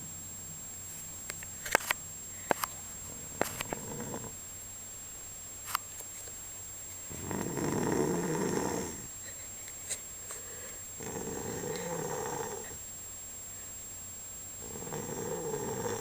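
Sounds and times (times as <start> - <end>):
person snoring: 3.1 - 4.4, 7.1 - 9.1, 10.5 - 12.8, 14.6 - 16.0.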